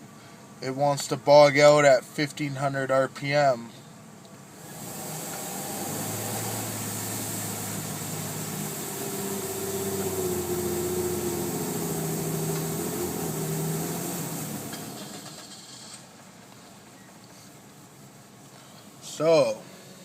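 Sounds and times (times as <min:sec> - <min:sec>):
car engine revving: 0:04.5 - 0:16.0.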